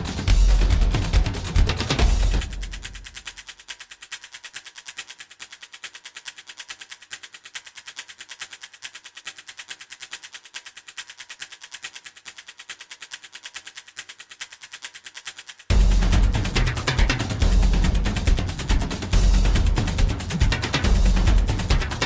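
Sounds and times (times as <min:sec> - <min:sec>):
fast even ticking: 0:00.0 - 0:05.5, 0:15.7 - 0:22.0.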